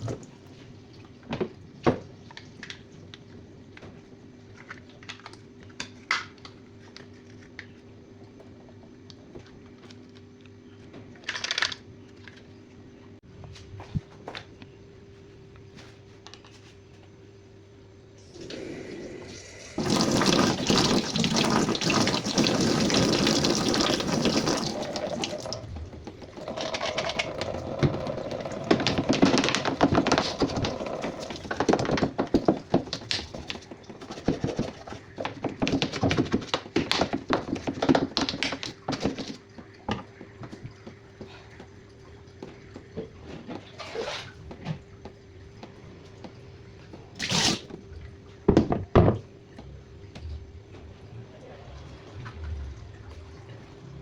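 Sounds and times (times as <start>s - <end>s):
tap water running hard: 18.2s - 36.1s
water dripping: 18.3s - 33.7s
splashing and scrubbing: 18.4s - 44.6s.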